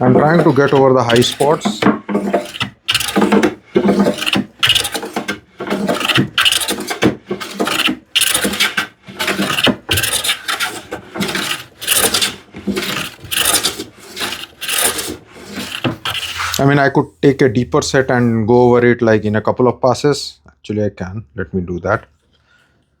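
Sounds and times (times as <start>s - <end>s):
hand plane shaving wood: 0.0s - 17.0s.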